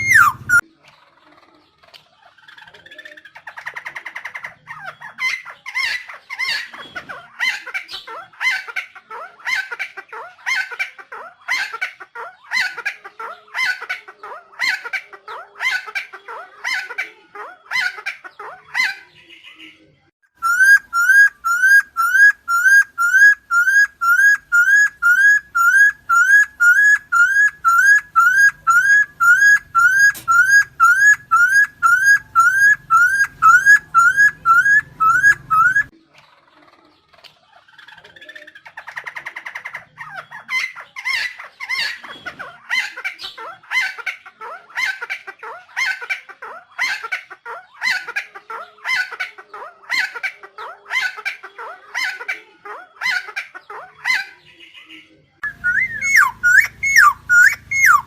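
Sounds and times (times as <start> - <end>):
bird harsh raspy calls: 0.0 - 0.6, 20.4 - 35.9, 55.4 - 58.0
bird rising whistled notes: 0.0 - 0.6, 55.4 - 58.0.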